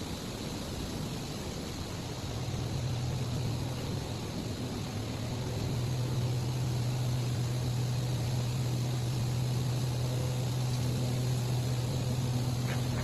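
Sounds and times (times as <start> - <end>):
background hiss: 0.0 - 13.0
factory machinery hum: 0.0 - 13.0.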